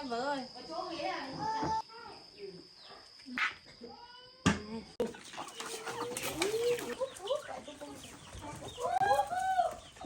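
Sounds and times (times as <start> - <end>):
chickens clucking: 5.0 - 10.0.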